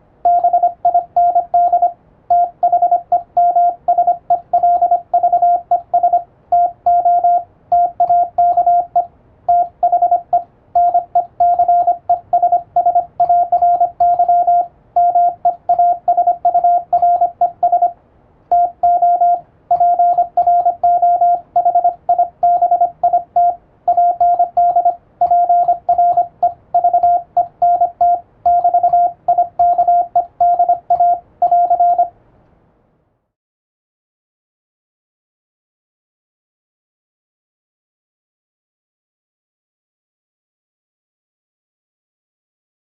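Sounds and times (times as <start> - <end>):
morse code beeps: 0.3 - 32.1.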